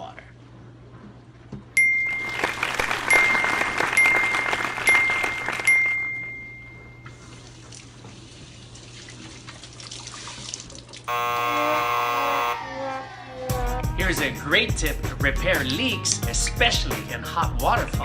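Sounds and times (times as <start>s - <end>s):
water running from tap: 7.2s - 11.1s.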